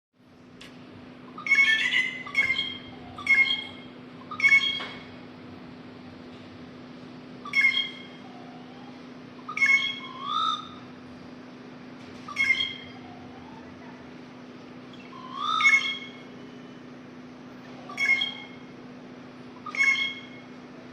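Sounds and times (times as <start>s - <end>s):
steady low hum: 0.2s - 20.9s
bird squawking: 1.2s - 5.1s, 7.4s - 11.0s, 12.2s - 14.0s, 14.9s - 16.9s, 17.5s - 18.8s, 19.5s - 20.6s.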